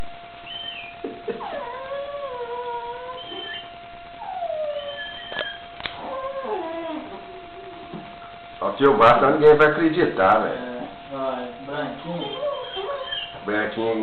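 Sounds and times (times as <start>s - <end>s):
dog whining: 0.4s - 8.4s, 12.0s - 13.4s
sharp clicks: 5.3s - 6.0s.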